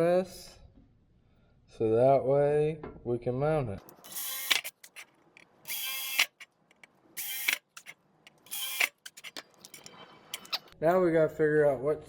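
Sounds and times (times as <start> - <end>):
small tool mechanism whirring: 3.9 - 10.8.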